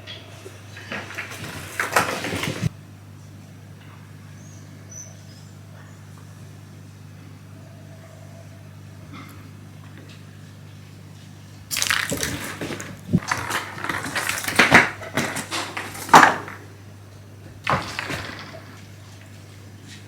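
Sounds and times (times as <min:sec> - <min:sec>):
scuffling rustling noise: 0:00.9 - 0:02.7.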